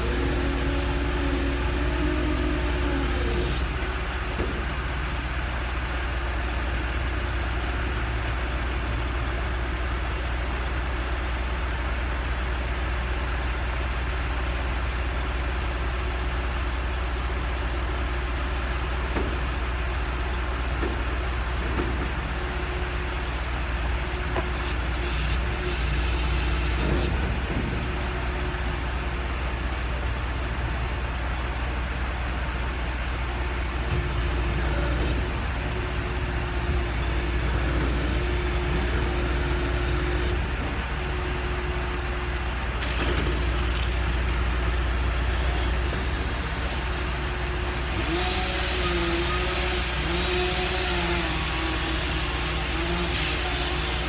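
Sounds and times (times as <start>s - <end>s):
heavy engine rumbling: 0.0s - 54.0s.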